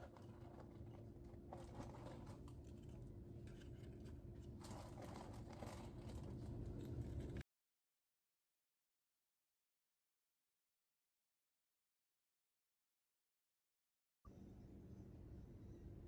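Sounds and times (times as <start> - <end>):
low hum with held tone: 0.0 - 7.4, 14.3 - 16.0.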